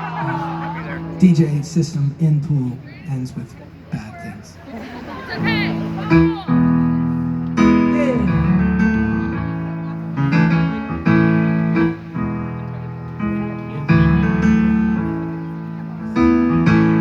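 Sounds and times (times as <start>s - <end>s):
piano playing slow chords: 0.0s - 2.4s, 5.4s - 17.0s.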